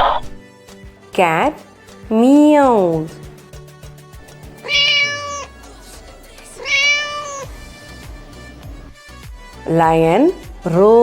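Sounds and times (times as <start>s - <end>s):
background music: 0.0s - 11.0s
cat meowing: 4.6s - 5.6s, 6.5s - 7.5s.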